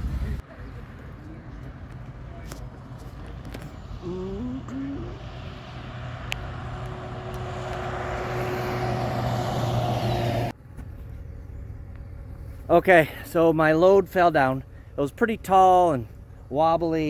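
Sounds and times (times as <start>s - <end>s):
tyre and wind noise: 0.0s - 1.0s
vehicle engine hum: 0.0s - 17.0s.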